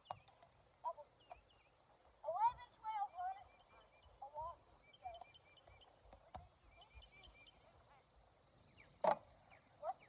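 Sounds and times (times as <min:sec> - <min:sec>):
small birds chirping: 0:00.0 - 0:08.0.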